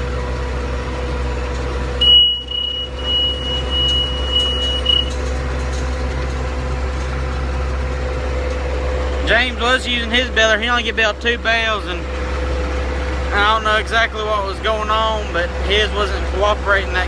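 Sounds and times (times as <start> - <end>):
tractor engine running: 0.0 - 17.0
high electronic beeps: 2.0 - 5.2.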